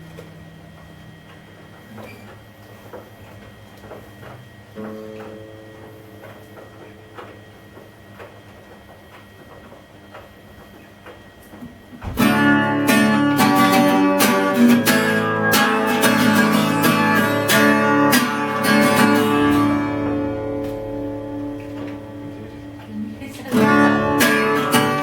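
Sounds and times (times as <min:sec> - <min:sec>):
acoustic guitar strumming chords: 0:04.8 - 0:07.9, 0:12.0 - 0:25.0
faint low hum: 0:11.6 - 0:25.0.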